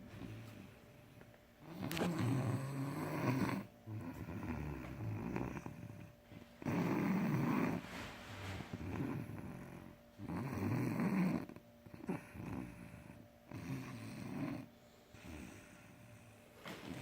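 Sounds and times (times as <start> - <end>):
boy snoring: 1.6 - 7.8, 8.7 - 16.0
quiet breathing: 11.0 - 17.0.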